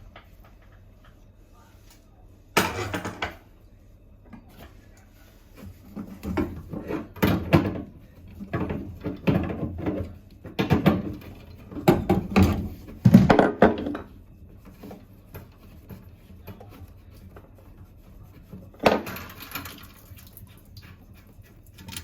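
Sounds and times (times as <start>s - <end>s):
hard objects knocking and clattering: 8.5s - 14.1s.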